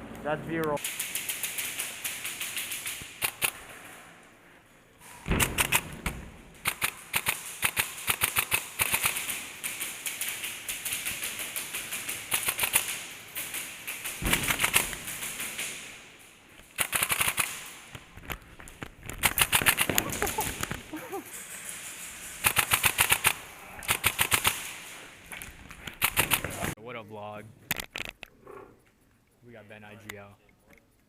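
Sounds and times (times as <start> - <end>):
airsoft guns firing bursts: 0.8 - 3.6, 5.2 - 16.0, 16.6 - 18.0, 19.2 - 20.9, 21.8 - 25.0, 25.8 - 26.8.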